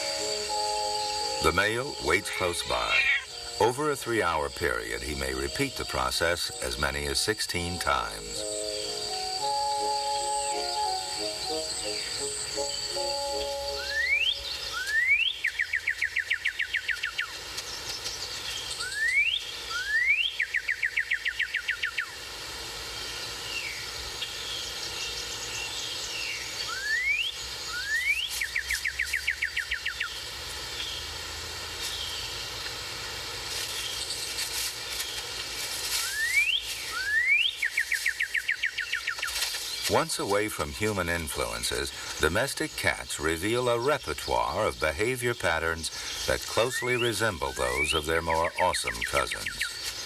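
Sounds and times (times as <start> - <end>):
faint chirps of other birds: 0.0 - 22.3, 22.9 - 50.0
bird singing whistles and notes: 7.8 - 17.3, 36.0 - 40.0.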